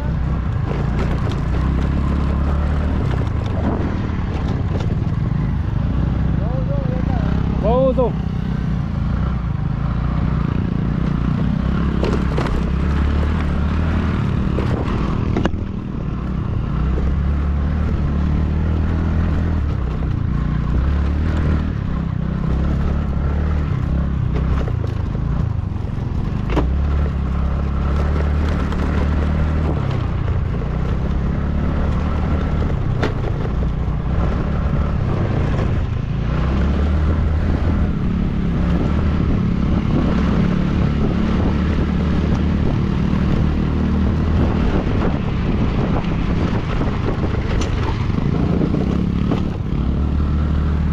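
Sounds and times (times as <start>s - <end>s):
vehicle engine and road rumble: 0.0s - 50.9s
sharp knocks and rattles: 11.8s - 13.4s.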